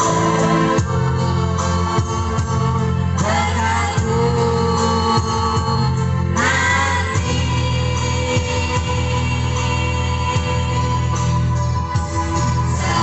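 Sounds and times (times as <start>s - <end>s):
instrumental accompaniment: 0.0s - 13.0s
choir singing: 6.4s - 13.0s.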